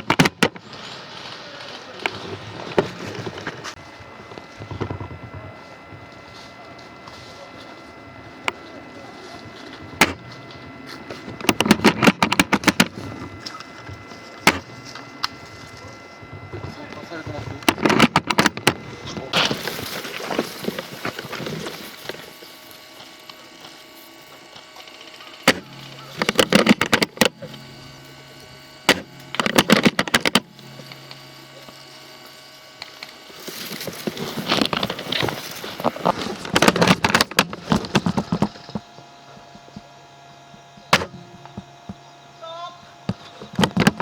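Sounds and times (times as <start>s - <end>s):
faint steady hum: 0.0s - 44.0s
rustling and clattering clicks: 9.7s - 39.9s, 43.1s - 44.0s.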